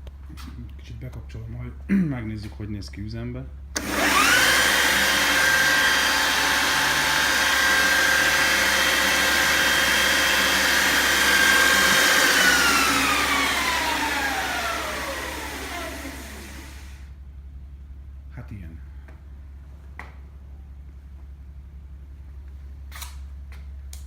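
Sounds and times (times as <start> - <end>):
belt grinder motor whine: 3.8 - 17.1.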